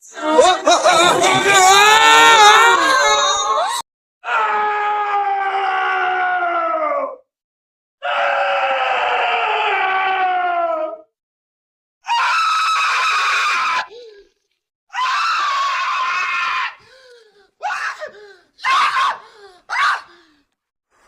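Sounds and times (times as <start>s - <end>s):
cartoon screams: 0.9s - 7.2s, 8.0s - 11.0s, 12.0s - 13.9s, 14.9s - 16.8s.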